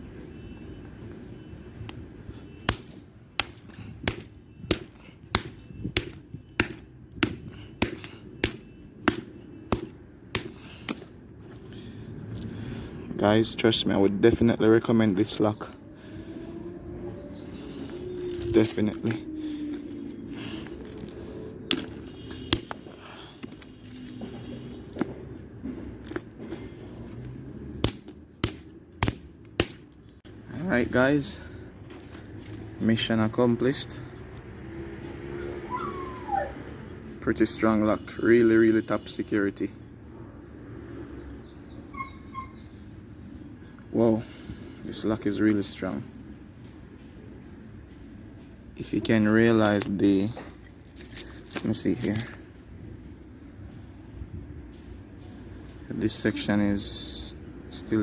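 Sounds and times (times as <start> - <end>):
hammer striking metal padlock: 2.7 - 10.6.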